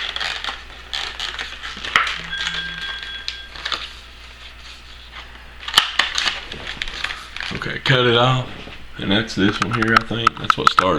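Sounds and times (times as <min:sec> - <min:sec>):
thin electronic tone: 0:02.1 - 0:03.9
short buzz: 0:02.2 - 0:03.6.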